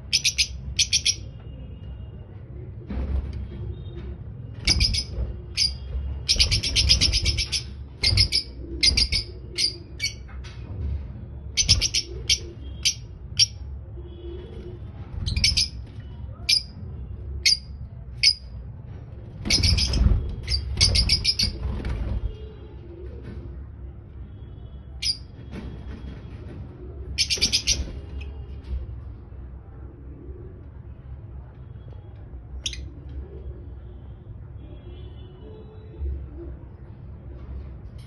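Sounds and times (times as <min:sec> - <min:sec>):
lovebirds chirping: 0:00.1 - 0:01.4, 0:04.6 - 0:10.2, 0:11.6 - 0:13.6, 0:27.2 - 0:28.4.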